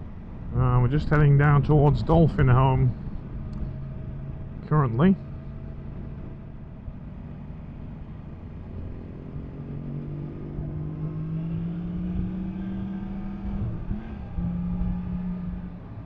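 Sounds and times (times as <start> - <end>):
low wind rush: 0.0 - 16.0
motorcycle engine revving: 8.7 - 16.0.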